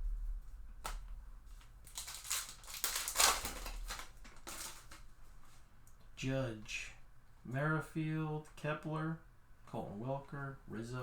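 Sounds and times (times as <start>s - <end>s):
packaging crinkling and rustling: 0.8s - 5.2s.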